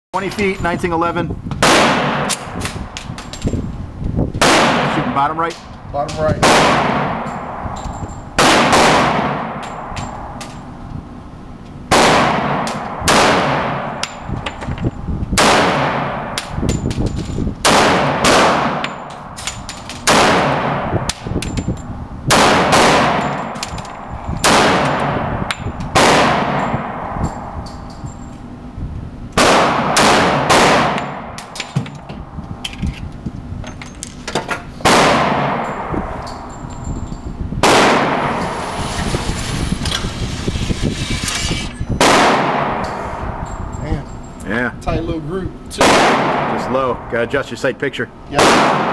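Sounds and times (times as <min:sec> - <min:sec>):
pistol shots echoing: 0:01.6 - 0:03.0, 0:04.4 - 0:05.2, 0:06.4 - 0:10.4, 0:11.9 - 0:14.3, 0:15.4 - 0:16.6, 0:17.6 - 0:19.4, 0:20.0 - 0:21.3, 0:22.3 - 0:27.6, 0:29.4 - 0:31.6, 0:34.8 - 0:36.1, 0:37.6 - 0:38.6, 0:42.0 - 0:43.1, 0:45.8 - 0:47.0, 0:48.4 - 0:48.9.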